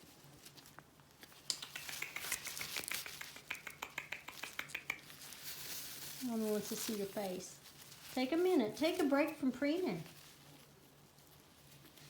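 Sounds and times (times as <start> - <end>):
parrot beak clicking through feathers: 1.4 - 5.4.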